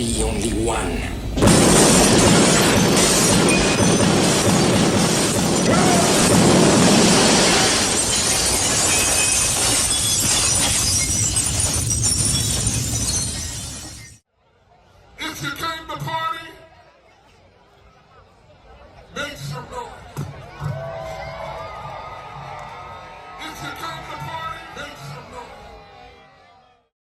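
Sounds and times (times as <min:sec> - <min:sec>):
crash and shatter: 0:01.4 - 0:14.2.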